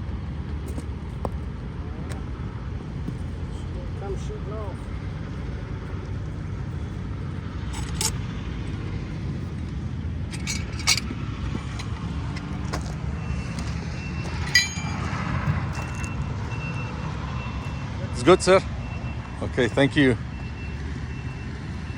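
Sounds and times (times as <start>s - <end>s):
vehicle engine rumbling: 0.0s - 21.9s
metallic clicks and clanks: 7.7s - 8.2s, 9.6s - 13.0s, 14.3s - 15.2s.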